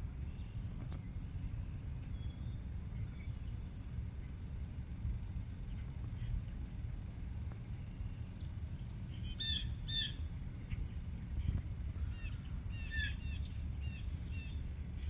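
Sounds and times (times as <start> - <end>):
low outdoor rumble: 0.0 - 15.0
high chirping animal calls: 9.1 - 10.2, 12.0 - 14.6.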